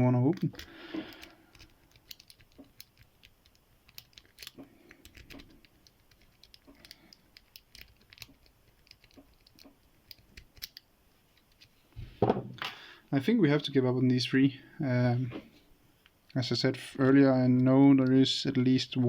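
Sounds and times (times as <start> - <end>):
lock picks clicking in padlocks: 0.4 - 10.8.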